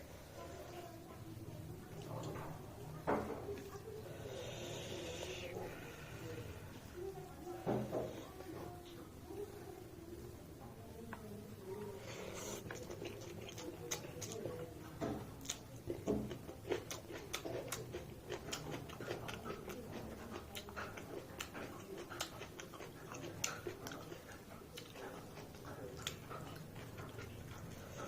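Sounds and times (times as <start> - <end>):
chewing and lip smacking: 12.4 - 28.0.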